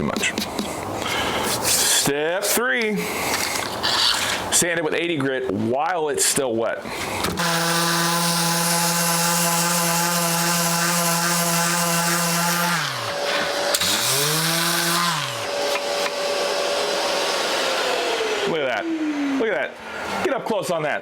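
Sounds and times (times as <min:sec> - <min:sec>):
electric sander running: 0:07.3 - 0:19.8.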